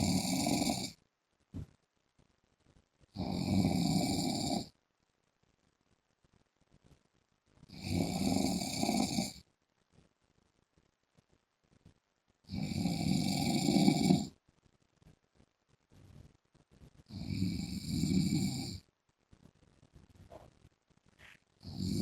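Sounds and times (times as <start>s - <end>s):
man snoring loudly: 0.0s - 1.0s, 3.2s - 4.7s, 7.7s - 9.4s, 12.5s - 14.3s, 17.1s - 18.8s, 21.7s - 22.0s.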